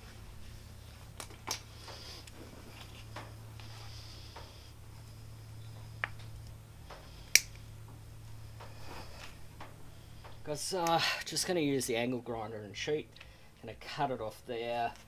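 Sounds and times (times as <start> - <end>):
steady low hum: 0.0 - 15.0
sharp snap-like click: 7.3 - 7.6.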